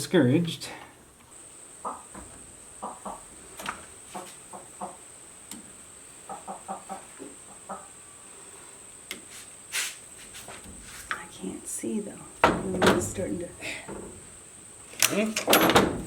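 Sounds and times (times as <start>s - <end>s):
chicken clucking: 1.8s - 2.2s, 2.8s - 3.4s, 4.1s - 5.1s, 6.2s - 8.0s.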